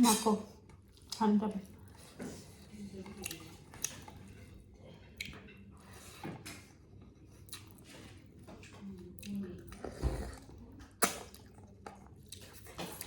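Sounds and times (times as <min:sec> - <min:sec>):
chewing and mouth smacks: 0:03.0 - 0:04.4, 0:05.1 - 0:05.5, 0:06.5 - 0:09.8, 0:10.4 - 0:13.0.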